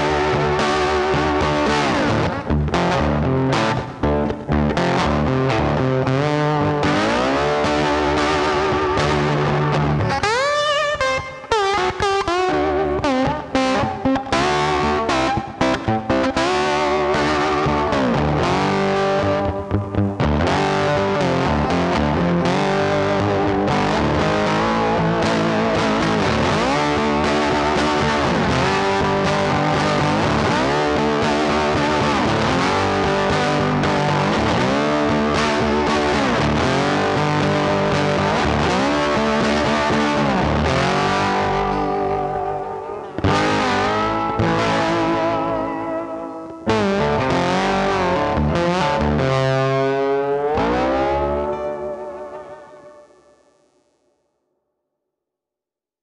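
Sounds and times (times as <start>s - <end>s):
background music: 49.9s - 53.9s.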